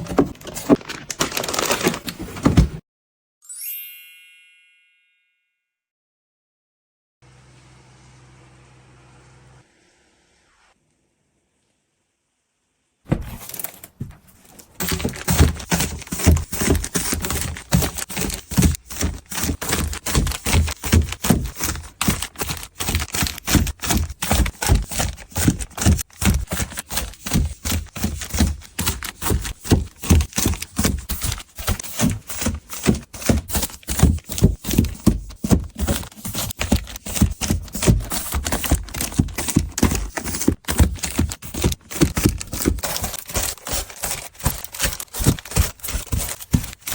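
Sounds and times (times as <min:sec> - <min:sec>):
handling clicks and knocks: 0:00.0 - 0:02.8, 0:13.1 - 0:46.9
packaging crinkling: 0:00.0 - 0:02.8, 0:13.1 - 0:46.9.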